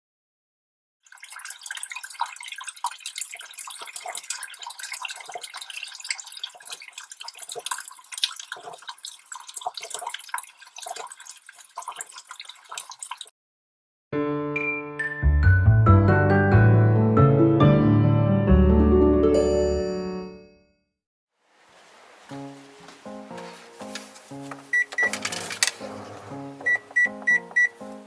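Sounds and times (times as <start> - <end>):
water splashing and dripping: 1.0 - 13.3.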